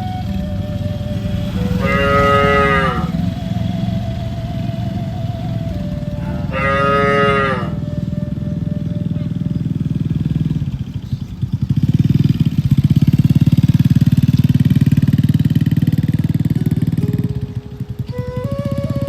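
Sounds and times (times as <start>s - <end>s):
steady low rumble: 0.0s - 15.1s
cows mooing: 1.6s - 3.4s, 6.0s - 7.8s.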